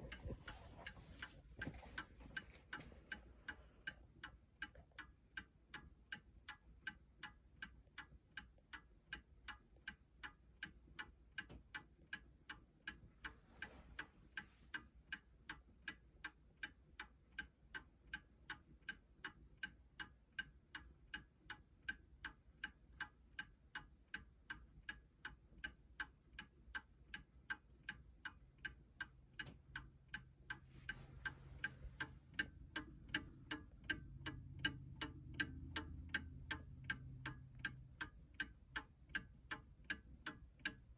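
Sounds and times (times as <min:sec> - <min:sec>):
soft rustles: 0:00.0 - 0:03.4, 0:30.7 - 0:32.4
clock ticking: 0:00.0 - 0:40.9.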